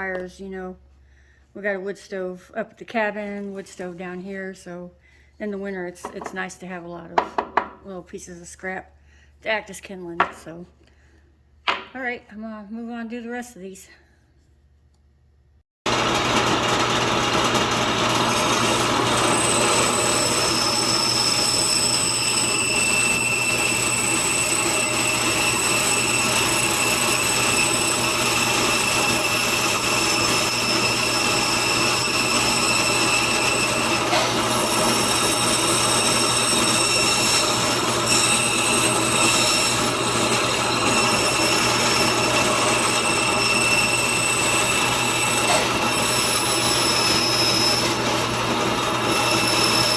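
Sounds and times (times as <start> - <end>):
band saw cutting wood: 15.9 - 49.9.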